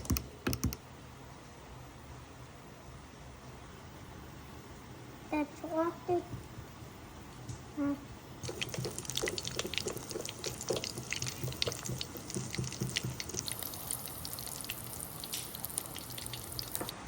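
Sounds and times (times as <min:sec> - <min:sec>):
steady hiss: 0:08.4 - 0:17.0
water dripping and splashing: 0:08.4 - 0:17.0.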